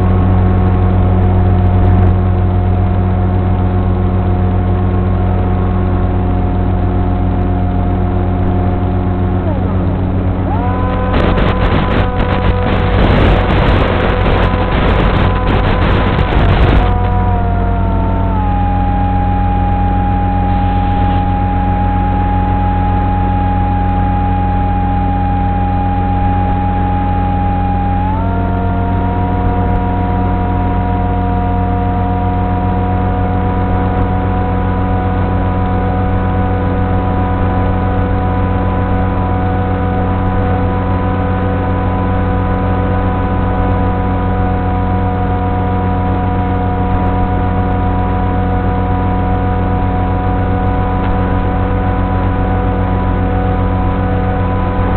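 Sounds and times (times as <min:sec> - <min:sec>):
electric motor and propeller whining: 0:00.0 - 0:54.9.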